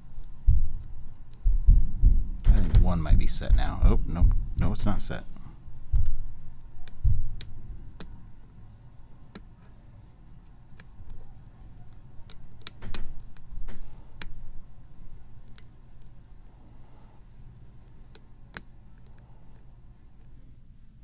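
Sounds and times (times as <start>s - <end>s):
lock pick clicking on pins: 10.4s - 14.6s.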